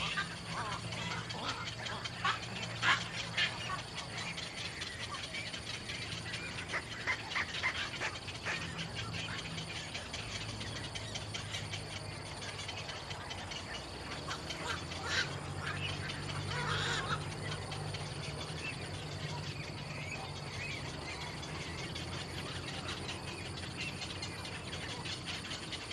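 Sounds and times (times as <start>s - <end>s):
birds chirping: 0.0s - 25.9s.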